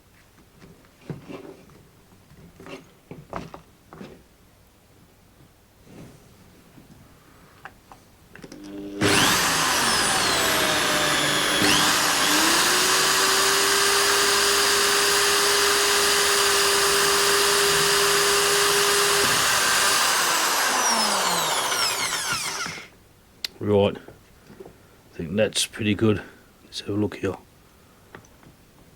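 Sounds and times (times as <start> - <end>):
electric drill boring plastic: 8.4 - 22.9.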